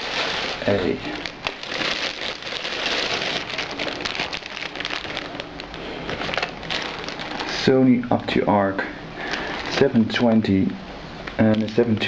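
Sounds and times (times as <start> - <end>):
packaging crackling and rustling: 0.0 - 7.7, 9.2 - 10.4, 11.2 - 12.0.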